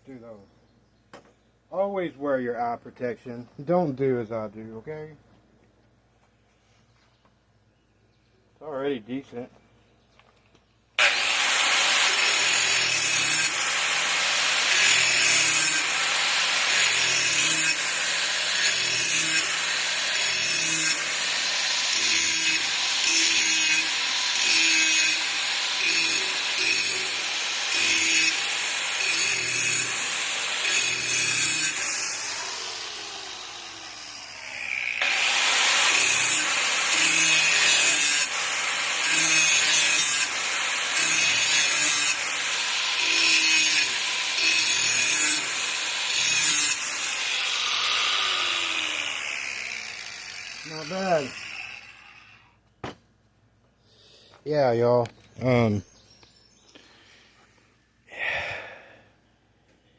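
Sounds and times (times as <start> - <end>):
grinder winding down whine: 11.0 - 52.5
angle grinder grinding steel: 11.0 - 52.6.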